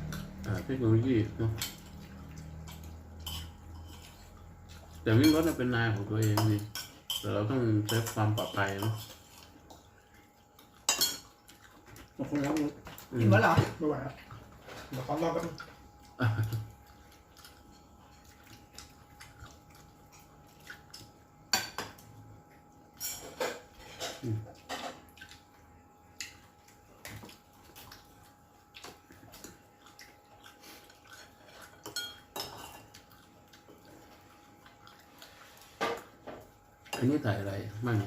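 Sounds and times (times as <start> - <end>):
cutlery clinking on plates: 2.6 - 4.3, 5.1 - 9.5, 10.8 - 11.4, 22.9 - 25.1, 31.2 - 33.0.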